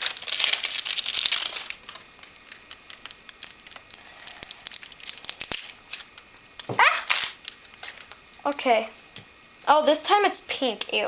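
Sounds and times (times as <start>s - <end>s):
plastic packaging crinkling: 0.0s - 6.2s, 7.1s - 8.2s.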